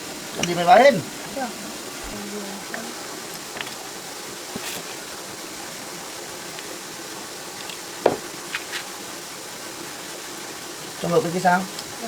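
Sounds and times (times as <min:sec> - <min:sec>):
background hiss: 0:00.0 - 0:12.0
sharp knock: 0:08.0 - 0:08.3.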